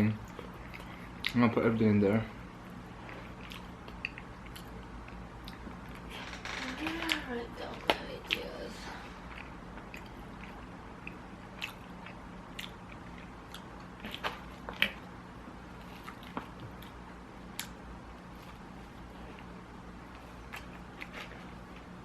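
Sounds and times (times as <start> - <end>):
faint steady hum: 0.0 - 22.0
wet chewing mouth clicks: 9.3 - 15.0.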